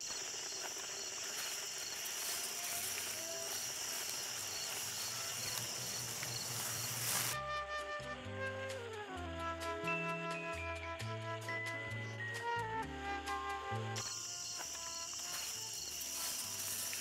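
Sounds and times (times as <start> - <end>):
background hiss: 0.0 - 7.4, 14.0 - 17.0
crickets chirping: 0.0 - 7.4, 14.0 - 17.0.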